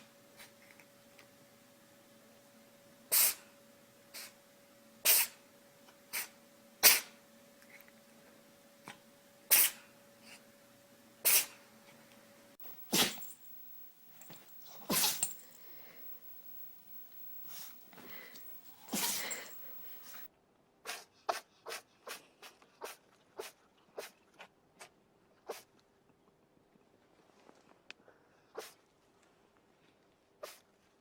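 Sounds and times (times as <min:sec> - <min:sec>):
faint steady hum: 0:00.0 - 0:20.3
animal sneezing: 0:03.1 - 0:03.5, 0:05.0 - 0:05.4, 0:06.1 - 0:07.2, 0:09.5 - 0:10.4, 0:11.2 - 0:11.6, 0:12.6 - 0:24.1, 0:30.4 - 0:30.6.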